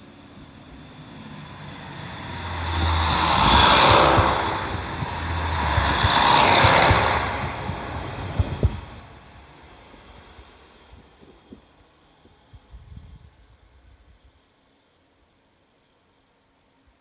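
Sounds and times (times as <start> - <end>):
wheel-on-rail noise: 0.0 - 12.4
diesel engine rumble: 1.0 - 11.5
wheels clicking over rail joints: 2.8 - 9.1.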